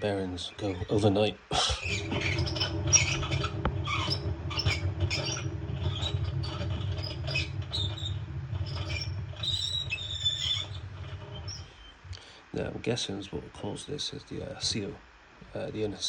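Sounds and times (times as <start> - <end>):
washing machine drum grinding: 1.8 - 12.2.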